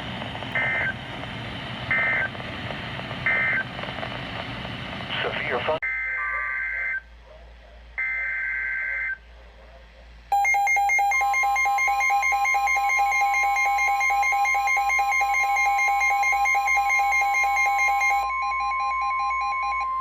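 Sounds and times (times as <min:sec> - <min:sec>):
pulsing electronic alarm: 0:00.5 - 0:01.1, 0:01.9 - 0:02.4, 0:03.2 - 0:03.8, 0:10.3 - 0:20.0.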